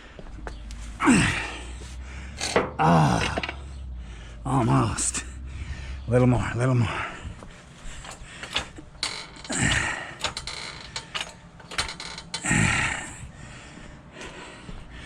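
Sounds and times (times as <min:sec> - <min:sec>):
jack creaking and straining: 0:00.5 - 0:06.6, 0:07.3 - 0:13.4
vehicle jack clicking and ratcheting: 0:01.7 - 0:03.9, 0:07.9 - 0:12.6.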